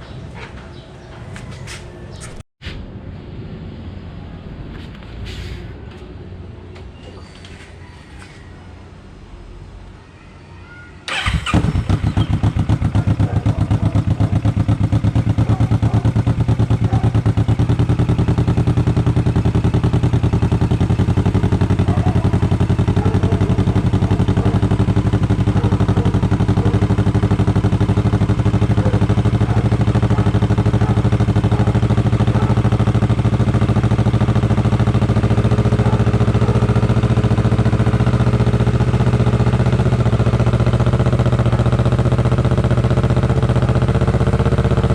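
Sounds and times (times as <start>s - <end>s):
motorcycle engine starting and idling: 11.1s - 44.9s.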